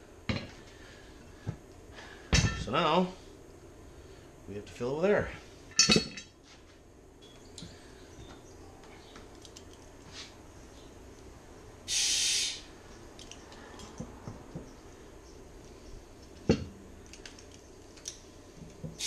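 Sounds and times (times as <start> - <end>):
compressed air hiss: 11.8 - 12.7.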